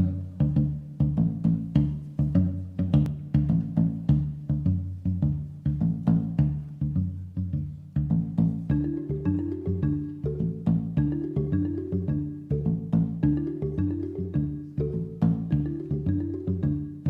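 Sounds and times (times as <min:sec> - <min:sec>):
low bass line: 0:00.0 - 0:17.0
music with percussive beat: 0:00.0 - 0:17.0.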